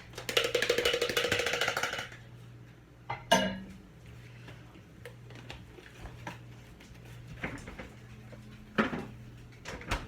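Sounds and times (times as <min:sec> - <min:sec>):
dish clinking: 0:03.1 - 0:03.7.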